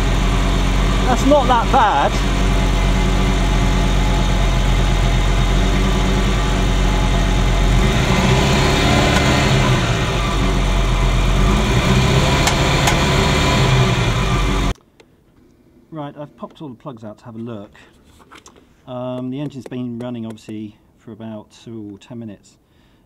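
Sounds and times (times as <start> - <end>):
car engine idling rough: 0.0 - 14.8.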